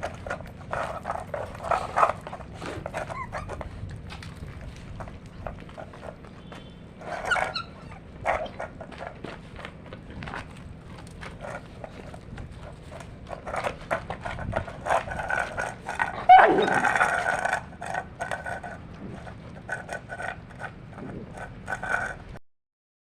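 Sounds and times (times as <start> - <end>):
clicks and scrapes: 0.0 - 22.4
dogs eating: 0.0 - 22.4
dog vocalisation falling in pitch: 16.2 - 17.1.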